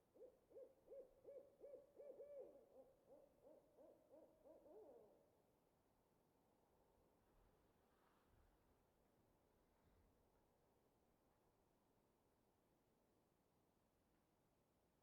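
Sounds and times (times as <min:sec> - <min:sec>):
faint owl hooting: 0:00.0 - 0:05.3.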